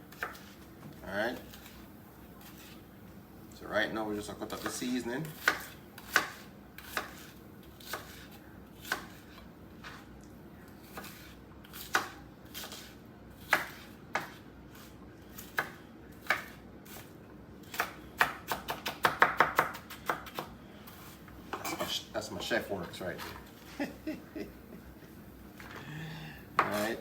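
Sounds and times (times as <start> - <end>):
knife chopping vegetables: 0.1 - 2.8, 4.2 - 10.1, 10.7 - 22.0, 25.6 - 27.0.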